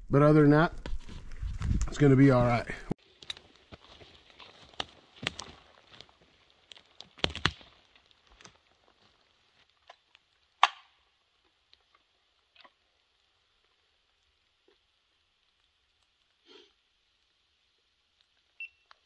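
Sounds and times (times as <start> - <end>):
faint steady hiss: 1.6 - 19.0
footsteps through forest brush: 3.0 - 10.2
twig cracking: 3.1 - 11.0.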